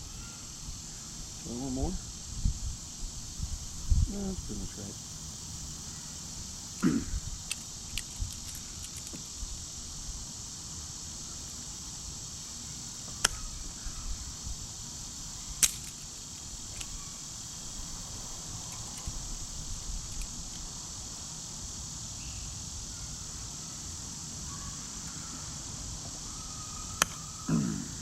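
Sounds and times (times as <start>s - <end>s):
insects chirring: 0.0s - 28.0s
hand tool clicks and taps: 7.5s - 9.2s, 15.6s - 16.1s, 27.0s - 27.2s.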